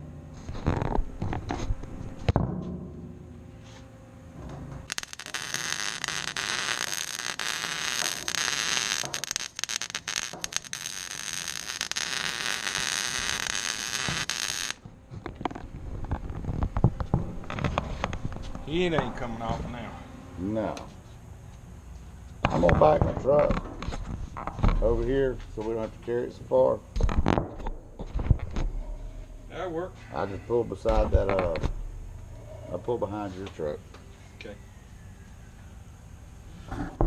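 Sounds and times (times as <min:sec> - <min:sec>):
welding arc sizzling crackle: 0:00.4 - 0:02.4, 0:04.7 - 0:19.3.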